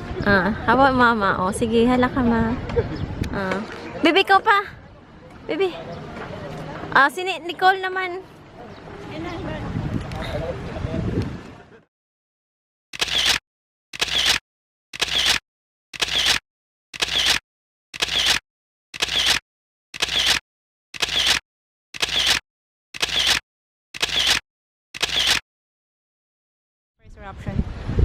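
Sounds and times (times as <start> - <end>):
camera shutter clicks: 13.0 - 13.4, 14.0 - 14.4, 15.0 - 15.4, 16.0 - 16.4, 17.0 - 17.4, 18.0 - 18.4, 19.0 - 19.4, 20.0 - 20.4, 21.0 - 21.4, 22.0 - 22.4, 23.0 - 23.4, 24.0 - 24.4, 25.0 - 25.4.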